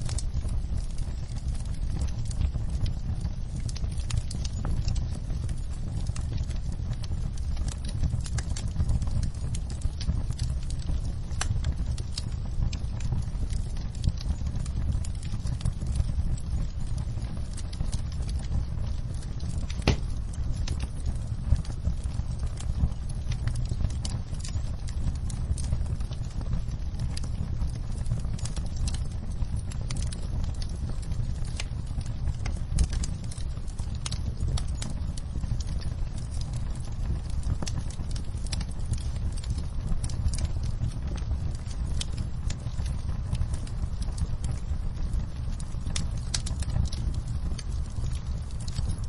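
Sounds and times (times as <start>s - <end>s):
rain on a window: 0.0s - 49.0s
wood fire crackling and popping: 0.0s - 49.0s
low rumble: 9.2s - 27.3s.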